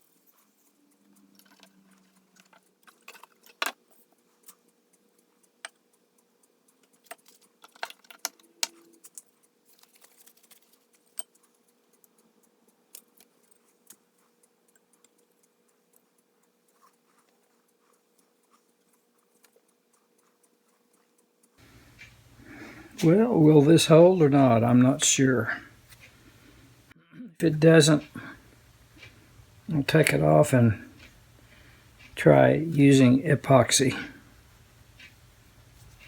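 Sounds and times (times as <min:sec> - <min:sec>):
small parts clicking and tapping: 0:00.0 - 0:26.9
faint steady hum: 0:10.8 - 0:36.0.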